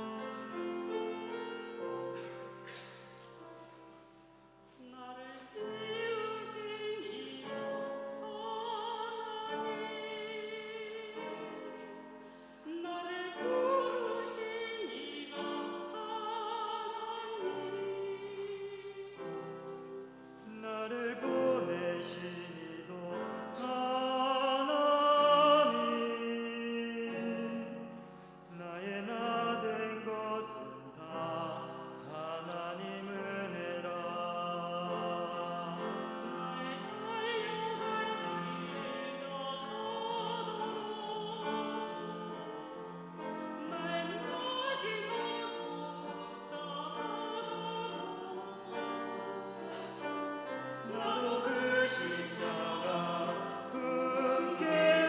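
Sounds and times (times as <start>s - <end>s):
classical sacred singing with vibrato: 0.0s - 55.0s.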